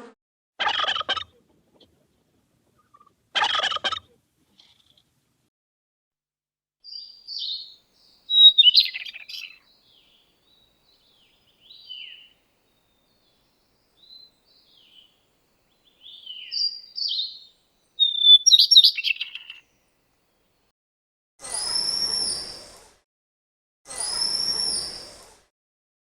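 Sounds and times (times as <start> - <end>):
songbird singing: 6.8 - 19.8.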